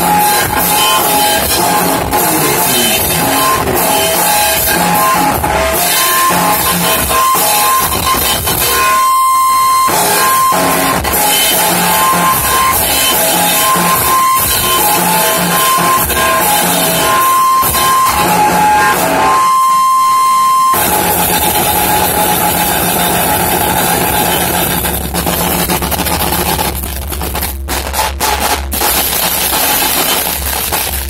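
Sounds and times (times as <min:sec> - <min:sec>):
high tone: 0:00.0 - 0:25.9
low drone: 0:00.0 - 0:26.2
wall of distorted noise: 0:00.0 - 0:31.0
sharp crackles: 0:23.0 - 0:31.0.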